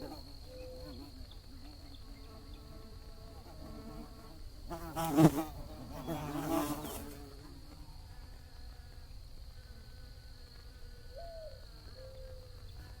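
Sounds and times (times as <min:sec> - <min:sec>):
honeybees buzzing: 0:00.0 - 0:07.8.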